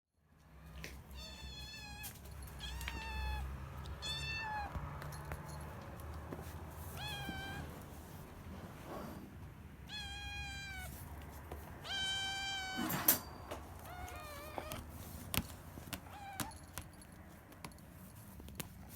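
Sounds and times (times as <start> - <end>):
kittens meowing: 1.1 - 4.8, 6.9 - 7.8, 9.8 - 11.0, 11.8 - 13.0, 13.8 - 14.9, 16.0 - 16.7.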